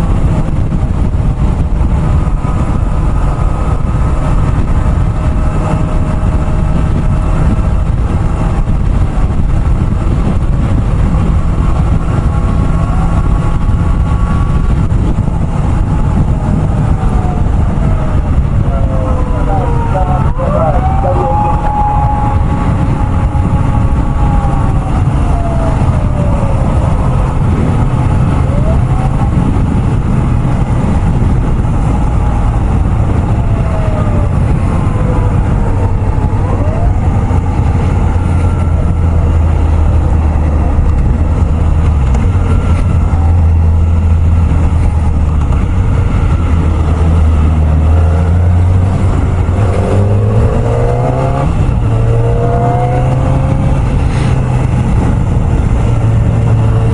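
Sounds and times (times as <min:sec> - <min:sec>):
motorcycle engine running: 0:00.0 - 0:56.9
wind noise: 0:00.0 - 0:56.9
police siren wailing: 0:01.9 - 0:56.9.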